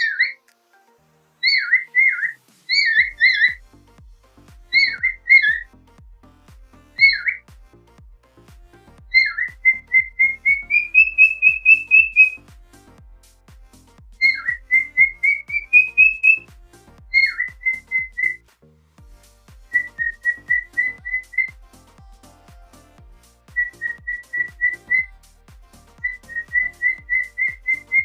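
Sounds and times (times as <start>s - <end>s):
whistled tune: 1.4s - 3.6s, 9.2s - 12.4s, 14.2s - 16.5s, 17.2s - 18.4s, 19.7s - 21.5s, 23.6s - 25.1s, 26.0s - 28.0s
soft steady beat: 2.6s - 28.0s.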